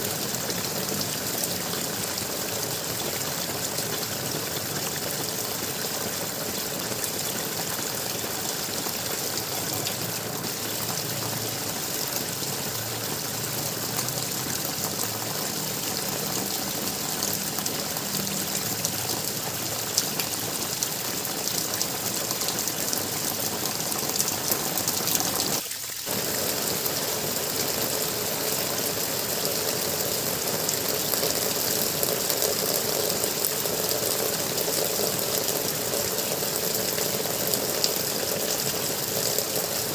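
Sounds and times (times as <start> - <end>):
water gurgling: 0.0 - 39.9.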